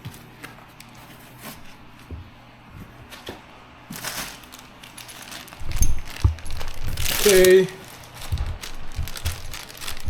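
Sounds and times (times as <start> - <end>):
cardboard packaging clicks and rustles: 0.0 - 10.0
cardboard box thumps: 8.2 - 10.0.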